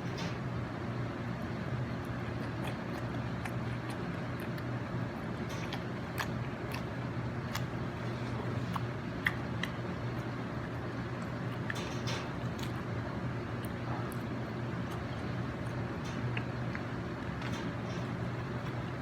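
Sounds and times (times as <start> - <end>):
low background hum: 0.0 - 19.0
person chewing and crunching: 2.2 - 5.0, 5.6 - 10.3.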